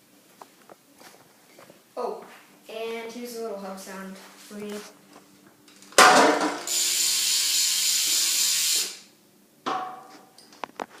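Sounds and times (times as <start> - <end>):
bike hub ratchet buzzing: 6.6 - 9.1.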